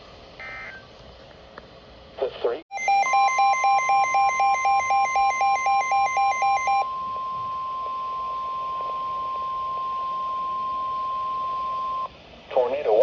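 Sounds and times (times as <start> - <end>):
steady single-pitch tone: 2.7 - 12.1
warbling two-pitch alarm: 2.7 - 12.1.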